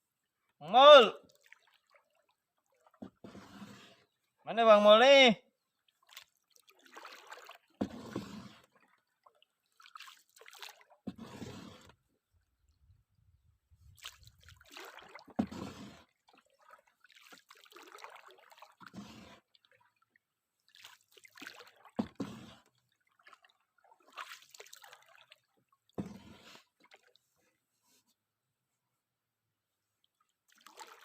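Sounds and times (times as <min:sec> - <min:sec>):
water sloshing and dripping: 0:01.2 - 0:04.2, 0:05.7 - 0:12.0, 0:13.8 - 0:27.6, 0:30.0 - 0:31.0.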